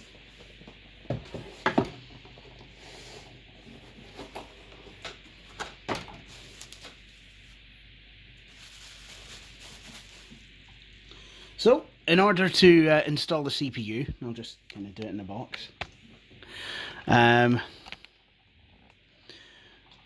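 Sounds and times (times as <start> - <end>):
faint rubbing of packaging: 8.4 - 10.6.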